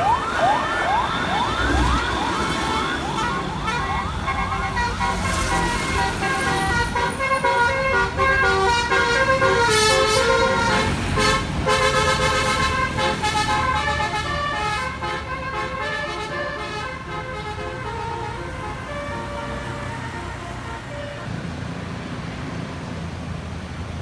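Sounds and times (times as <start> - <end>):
engine and road rumble: 0.0 - 24.0
bus musical horn tune: 2.5 - 21.3.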